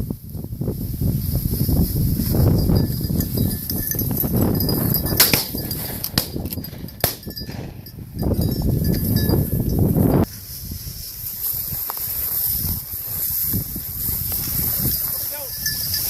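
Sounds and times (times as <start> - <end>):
low rumble of wind: 0.0 - 16.0.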